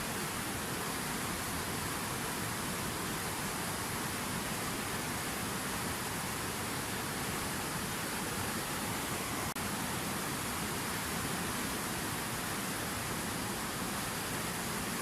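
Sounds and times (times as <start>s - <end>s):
fountain water splashing: 0.0s - 15.0s.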